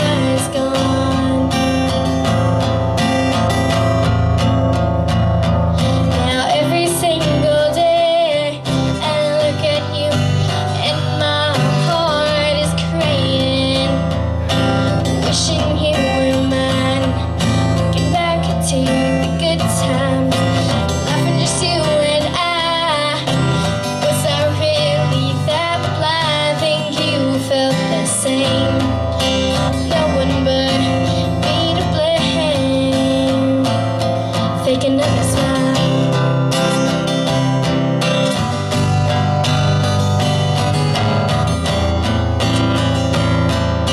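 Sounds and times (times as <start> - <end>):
woman singing: 0.0 - 2.6, 5.8 - 37.0
strummed acoustic guitar: 0.0 - 43.9.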